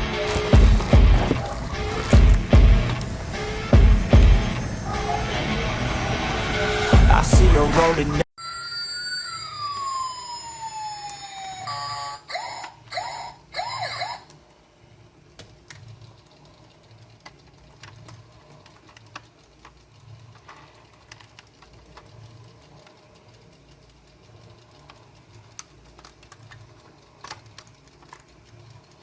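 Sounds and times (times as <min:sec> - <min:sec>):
background music: 0:00.0 - 0:08.2
electronic siren-like tones: 0:00.0 - 0:14.4.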